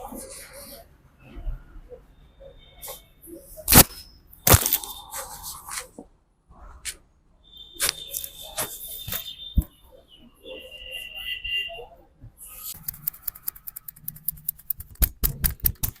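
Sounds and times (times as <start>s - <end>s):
cracks and slaps of massage: 3.7s - 5.0s, 14.6s - 16.0s.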